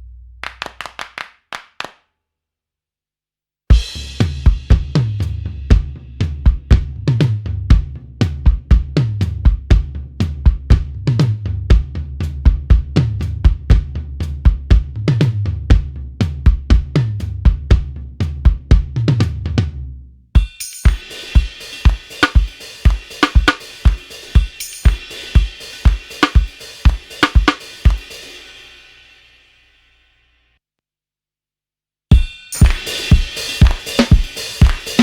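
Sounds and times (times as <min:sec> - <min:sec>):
drum kit groove: 0:03.7 - 0:19.6, 0:20.4 - 0:28.6, 0:32.1 - 0:35.0
cymbal crash: 0:32.5 - 0:35.0.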